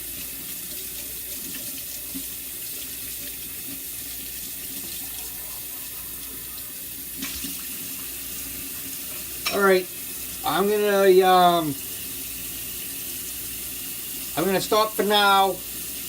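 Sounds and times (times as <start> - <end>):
faucet running into sink: 0.0 - 16.0
dishes clinking: 9.4 - 9.7.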